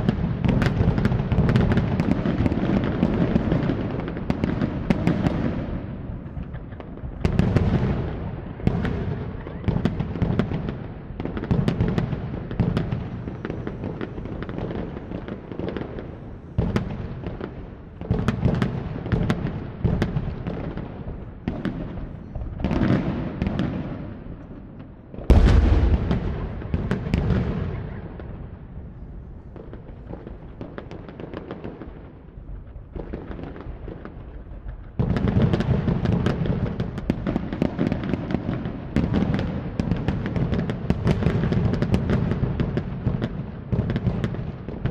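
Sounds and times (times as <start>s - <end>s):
fireworks bangs and crackling: 0.0s - 44.9s
deep firework boom: 25.2s - 29.7s.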